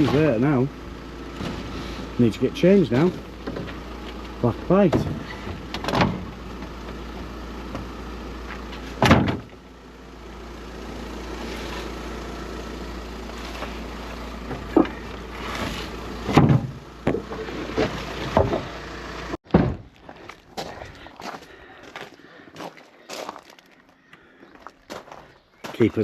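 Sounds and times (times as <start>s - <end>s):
knocks and thumps: 16.3s - 18.7s, 19.4s - 20.0s.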